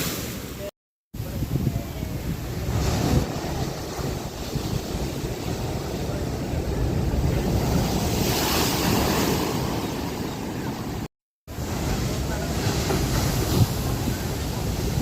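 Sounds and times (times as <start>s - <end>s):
waves breaking on shore: 0.0s - 15.0s
wind rumble on microphone: 1.2s - 9.8s.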